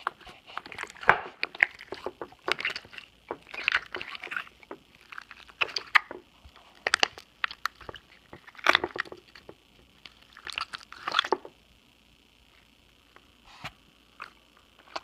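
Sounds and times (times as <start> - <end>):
slime squelching and popping: 0.0 - 11.5
microphone hiss: 0.0 - 15.0.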